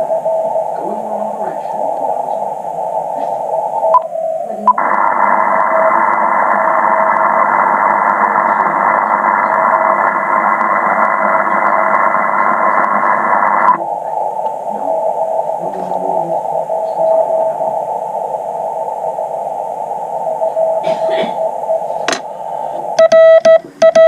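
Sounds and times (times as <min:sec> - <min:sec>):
radio band noise hiss: 0:00.0 - 0:24.0
morse code tone: 0:23.0 - 0:24.0.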